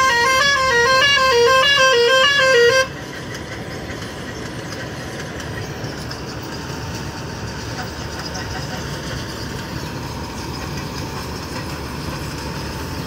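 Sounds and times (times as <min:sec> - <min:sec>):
musical vehicle horn: 0:00.0 - 0:03.0
engine running: 0:00.0 - 0:13.0.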